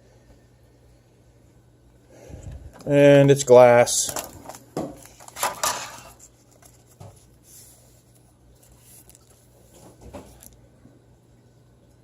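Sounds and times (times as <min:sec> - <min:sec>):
packaging rustling: 0:04.1 - 0:10.6.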